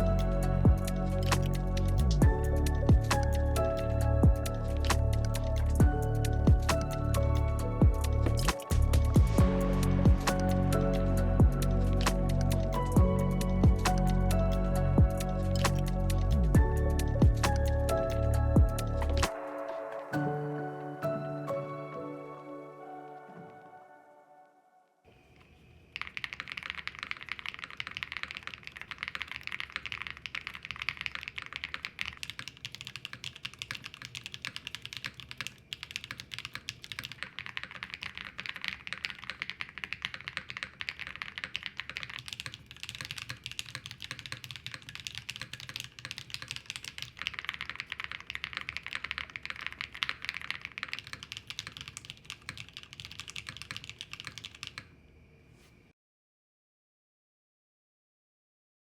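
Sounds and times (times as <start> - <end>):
mechanical keyboard typing: 26.0 - 54.9.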